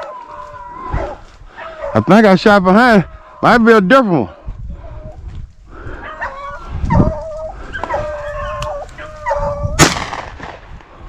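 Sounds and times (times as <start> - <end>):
dogs baying and howling: 0.0 - 3.6, 5.8 - 9.8
sharp loud bang: 9.8 - 10.6.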